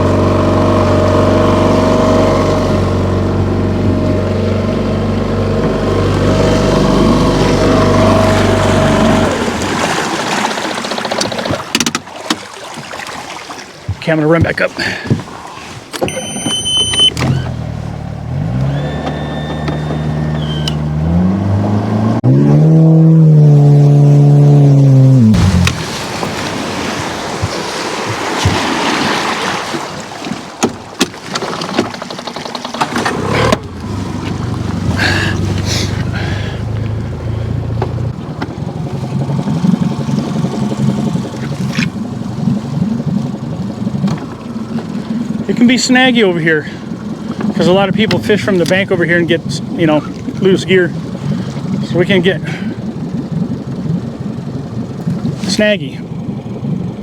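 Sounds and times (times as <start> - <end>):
boat motor throttling up: 0.0 - 12.4, 13.9 - 29.8, 30.5 - 57.0
short electronic beep: 16.0 - 17.2.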